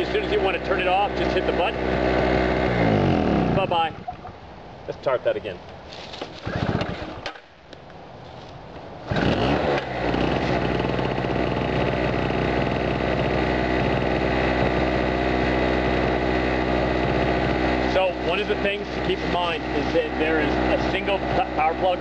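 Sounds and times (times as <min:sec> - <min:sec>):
generator engine running: 0:00.0 - 0:04.3, 0:06.4 - 0:07.2, 0:09.0 - 0:22.0
recoil starter pull: 0:06.2 - 0:07.4, 0:09.1 - 0:19.9.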